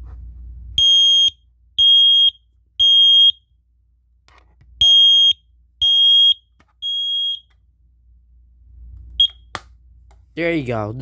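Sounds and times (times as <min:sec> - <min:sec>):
smoke alarm beeping: 0:00.8 - 0:03.5, 0:04.8 - 0:07.5, 0:09.2 - 0:09.5.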